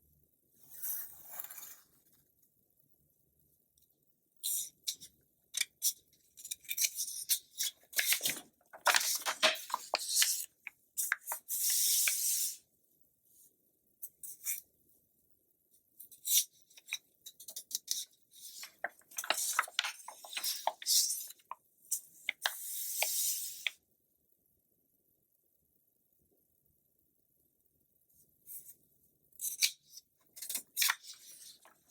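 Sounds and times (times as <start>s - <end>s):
magazine pages turning: 7.6s - 12.3s, 18.4s - 21.5s, 30.4s - 31.9s.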